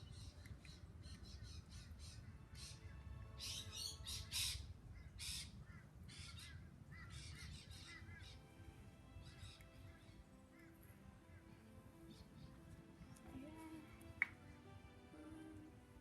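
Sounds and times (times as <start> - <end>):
birds squawking: 3.4 - 8.5, 9.1 - 12.6.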